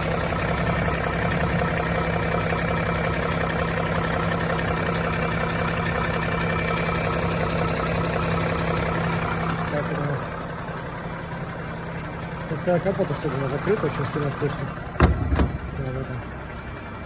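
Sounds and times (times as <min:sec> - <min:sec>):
car engine idling: 0:00.0 - 0:17.0
belt tensioner knocking: 0:13.0 - 0:16.6.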